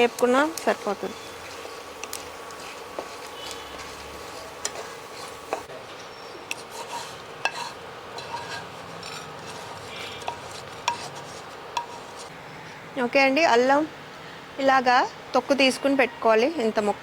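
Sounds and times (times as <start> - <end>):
spatula scraping spices in pan: 0.2 - 12.4.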